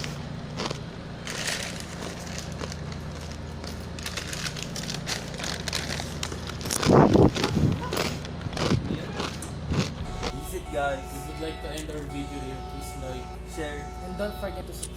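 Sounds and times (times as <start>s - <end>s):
crunchy cereal being chewed: 0.0s - 10.5s
steady low hum: 0.0s - 14.9s.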